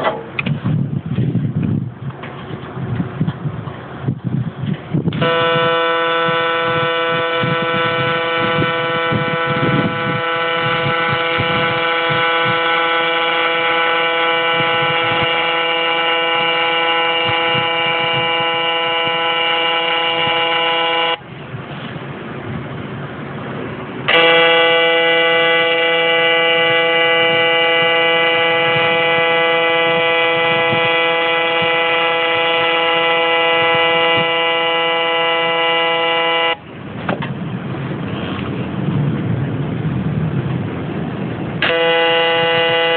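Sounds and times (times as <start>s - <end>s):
low rumbling noise: 0.0s - 42.9s
welding arc buzzing: 5.1s - 21.2s, 24.1s - 36.6s.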